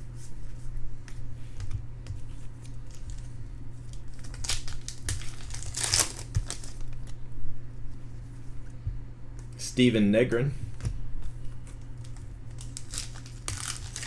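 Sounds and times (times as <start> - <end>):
foil wrapper crinkling and tearing: 3.9 - 7.1, 12.0 - 14.0.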